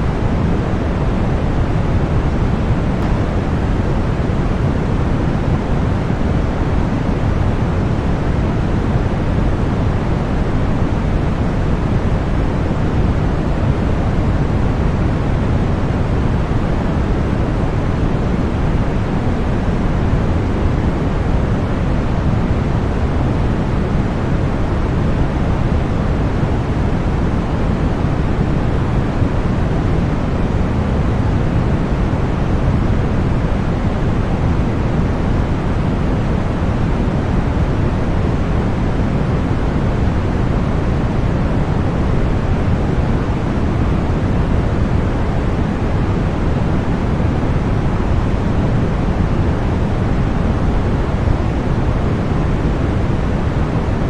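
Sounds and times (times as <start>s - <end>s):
deep white noise: 0.0s - 54.0s.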